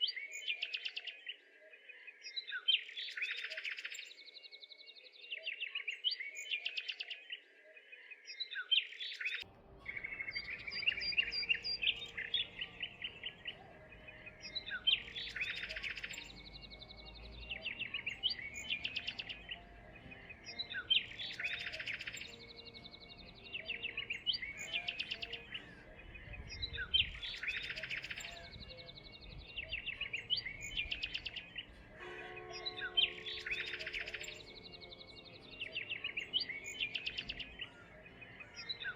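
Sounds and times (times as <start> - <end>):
songbirds chirping and trilling: 0.0 - 38.9.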